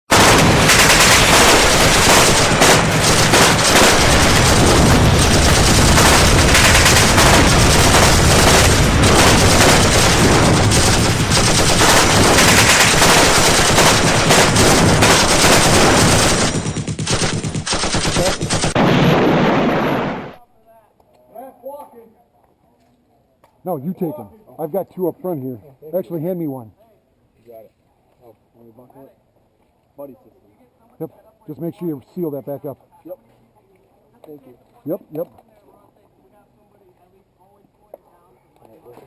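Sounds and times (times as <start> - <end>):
rapid gunfire: 0.1 - 20.4.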